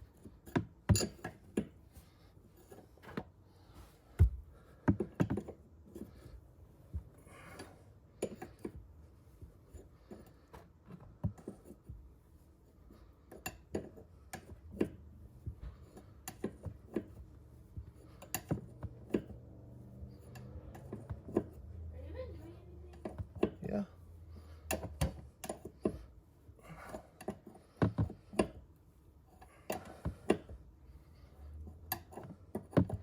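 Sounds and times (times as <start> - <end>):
tools clanking on metal: 0.4 - 1.7.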